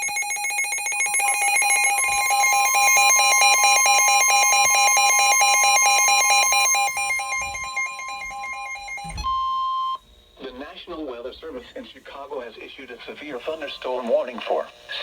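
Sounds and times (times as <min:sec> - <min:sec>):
two-tone alarm: 0:00.0 - 0:10.6.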